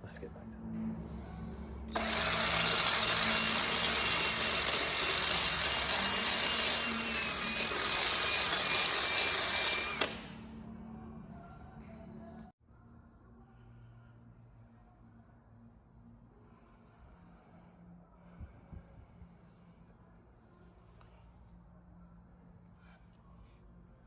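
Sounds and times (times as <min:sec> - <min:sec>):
power drill whining: 0:01.9 - 0:10.5.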